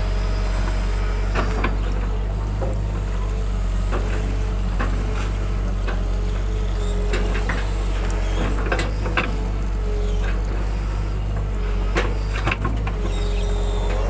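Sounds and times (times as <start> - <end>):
diesel engine running: 0.0 - 14.0
wavering hydraulic whine: 6.7 - 14.0.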